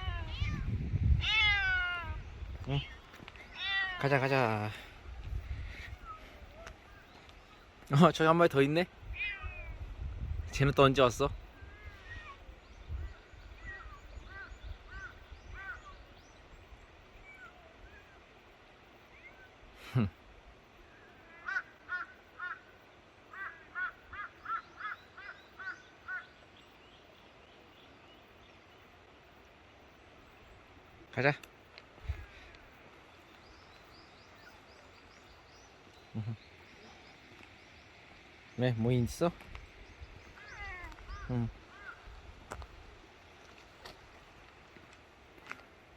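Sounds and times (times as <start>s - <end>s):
birds chirping: 0.0s - 45.9s
person murmuring: 19.8s - 20.2s, 36.1s - 36.5s
bird chirping: 32.2s - 42.0s.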